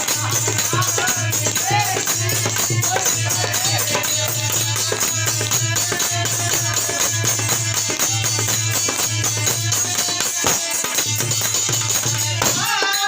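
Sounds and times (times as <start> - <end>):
jingling hand percussion: 0.0 - 13.0.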